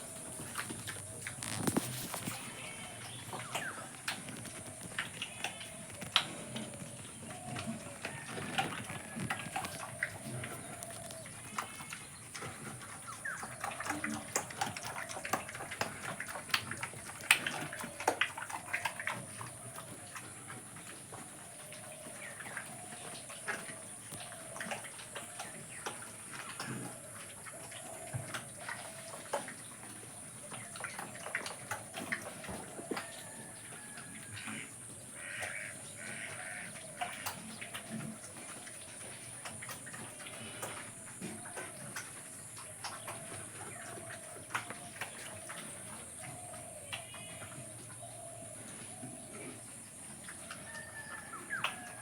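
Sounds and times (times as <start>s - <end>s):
pigs grunting: 0.0s - 29.6s, 34.3s - 50.7s.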